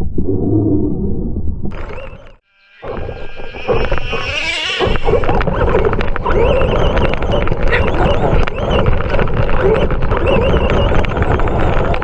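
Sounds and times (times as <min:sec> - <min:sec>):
dogs barking and yelping: 0:01.7 - 0:10.8.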